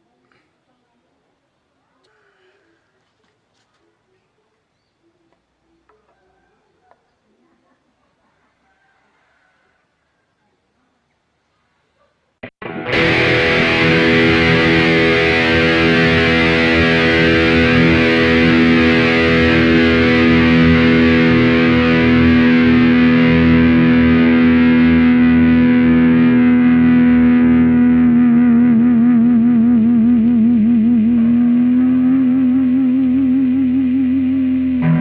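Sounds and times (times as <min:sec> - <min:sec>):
distorted electric guitar note: 0:12.4 - 0:35.0.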